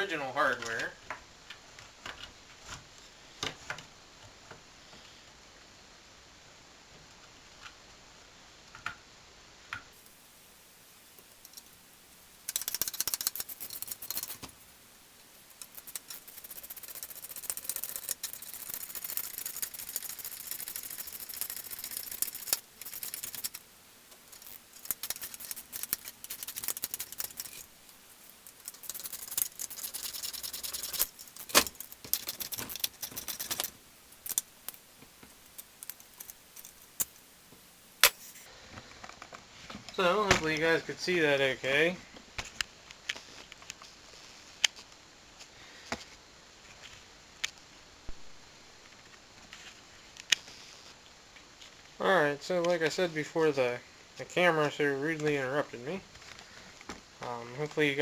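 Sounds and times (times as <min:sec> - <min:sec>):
ratchet wrench clicking: 0:12.5 - 0:14.4, 0:15.5 - 0:23.6, 0:24.3 - 0:27.6.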